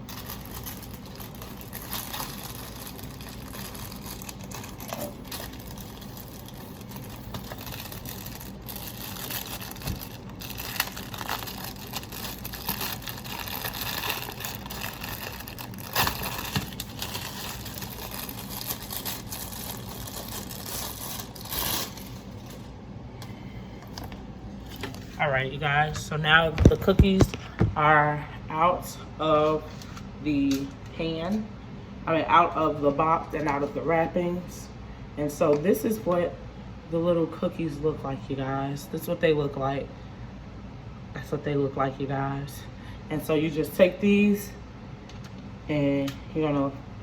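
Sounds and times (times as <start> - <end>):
plastic and cardboard crinkling: 0.0 - 22.7.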